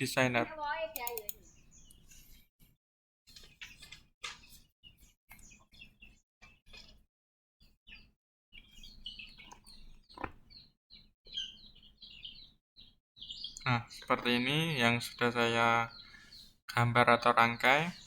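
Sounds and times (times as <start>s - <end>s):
birds chirping: 0.0s - 2.4s, 7.9s - 18.0s
faint clicks: 0.9s - 2.0s.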